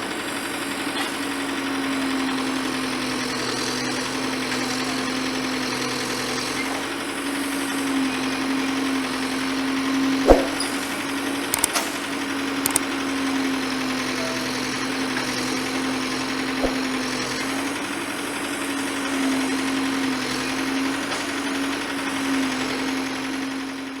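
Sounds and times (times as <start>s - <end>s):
excavator engine running: 0.0s - 24.0s
small clicks: 11.4s - 12.0s, 12.6s - 12.9s.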